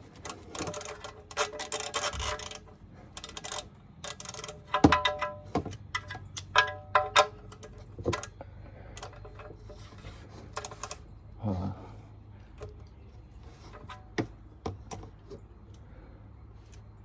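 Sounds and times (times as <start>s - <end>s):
ratchet wrench clicking: 0.2s - 8.3s.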